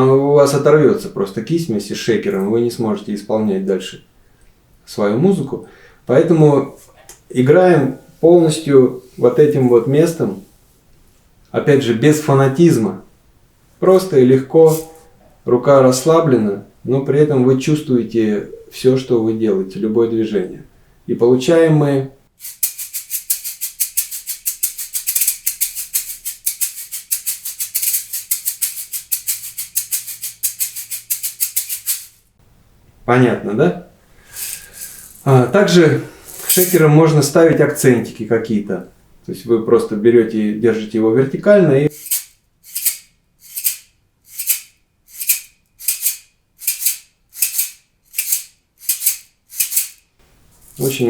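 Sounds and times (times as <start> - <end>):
shaker played in steady groove: 14.6 - 15.2, 22.4 - 32.3, 34.3 - 37.0, 41.9 - 51.0.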